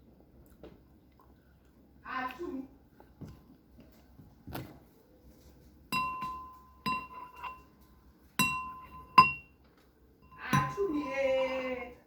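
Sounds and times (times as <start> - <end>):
utensil clinking on dish: 5.9 - 7.7, 8.4 - 9.5, 10.2 - 11.1.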